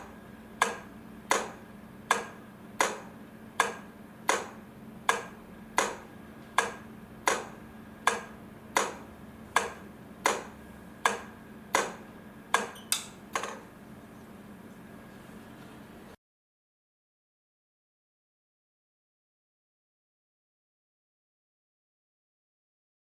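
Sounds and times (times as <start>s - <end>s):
flasher relay clicking: 0.0s - 13.8s
steady low hum: 0.0s - 16.2s.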